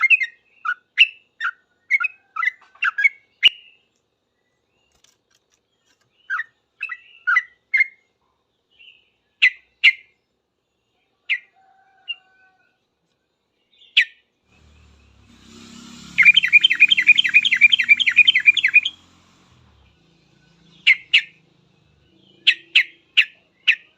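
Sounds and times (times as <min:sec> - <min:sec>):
bird chirping: 0:00.0 - 0:11.6, 0:13.1 - 0:23.9
bird song rapid repeated notes: 0:13.8 - 0:23.9.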